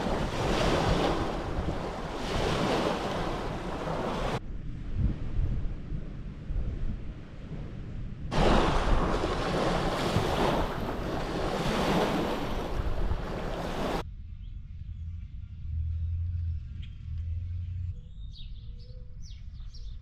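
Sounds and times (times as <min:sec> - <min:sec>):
waves washing onto shore: 0:00.0 - 0:04.4, 0:08.3 - 0:14.0
wind on microphone: 0:00.0 - 0:20.0
low rumble: 0:14.0 - 0:19.3
faint bird chirp: 0:14.4 - 0:20.0.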